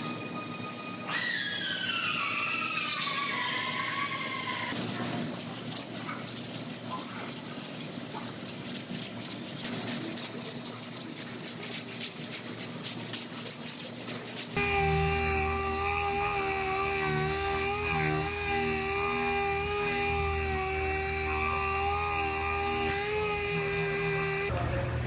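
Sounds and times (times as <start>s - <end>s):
scratchy sanding strokes: 4.7s - 24.5s
power tool whine: 14.6s - 24.5s.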